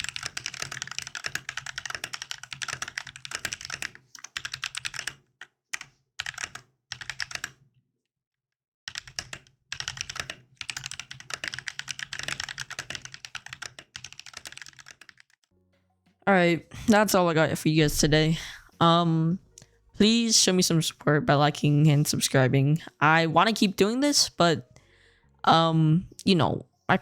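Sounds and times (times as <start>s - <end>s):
mechanical keyboard typing: 0.0s - 5.2s, 5.8s - 7.6s, 8.9s - 15.4s.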